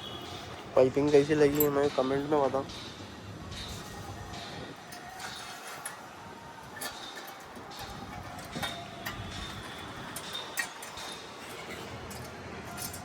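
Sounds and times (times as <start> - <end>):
metal clinks and knocks: 6.7 - 13.0.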